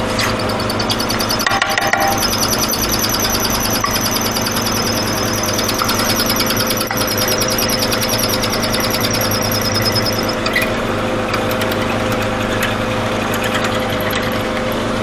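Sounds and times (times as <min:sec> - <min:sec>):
rhythmic high squeal: 0:00.0 - 0:10.8
mortise machine motor running: 0:00.0 - 0:15.0.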